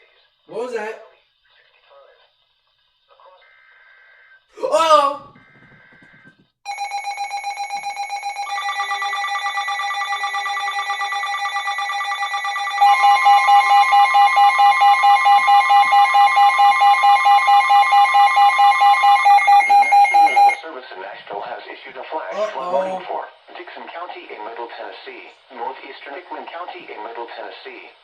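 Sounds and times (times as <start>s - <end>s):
electronic alarm tones pulsing: 3.4s - 20.6s
higher alarm tone: 6.7s - 20.6s.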